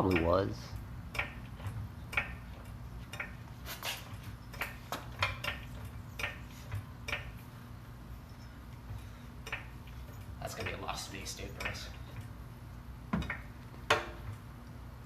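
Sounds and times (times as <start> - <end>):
light clicks and taps: 8.7 - 12.3.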